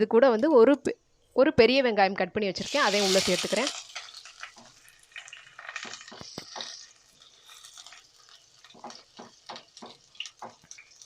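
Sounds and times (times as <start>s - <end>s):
spoon scraping a pan: 2.6s - 10.8s
onion sizzling in oil: 2.6s - 11.0s.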